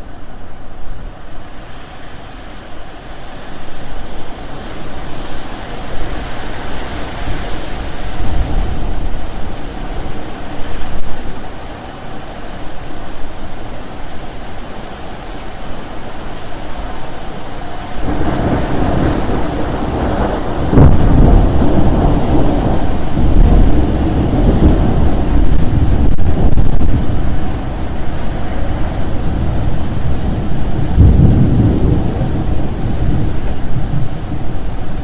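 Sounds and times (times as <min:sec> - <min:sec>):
heavy rain: 0:00.0 - 0:35.0
thunder rumbling: 0:04.0 - 0:12.2, 0:16.8 - 0:35.0.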